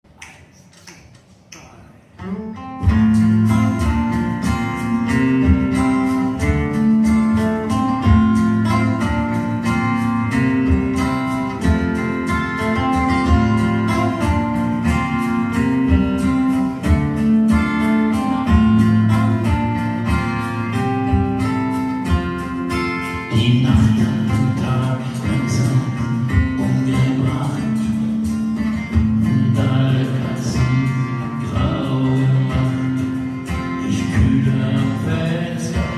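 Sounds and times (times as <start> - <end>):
plucked guitar notes: 2.1 - 35.9
steady bass line: 2.8 - 35.9.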